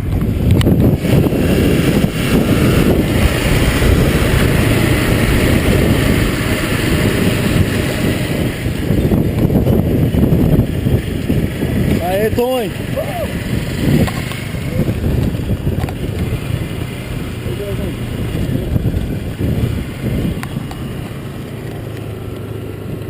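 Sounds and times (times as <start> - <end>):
wind buffeting microphone: 0.0 - 22.2.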